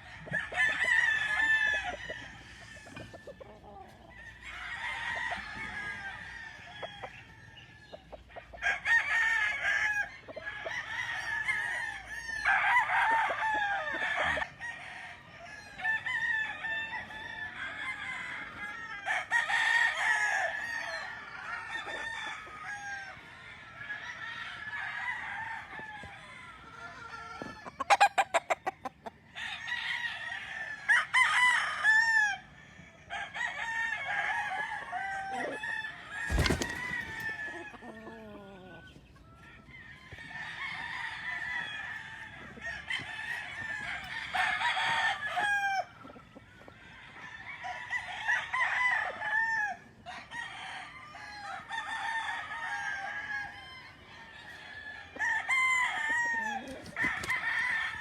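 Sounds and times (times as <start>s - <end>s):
hens clucking: 0.0s - 14.6s, 25.0s - 29.3s, 34.2s - 44.1s
roosters crowing: 0.0s - 58.0s.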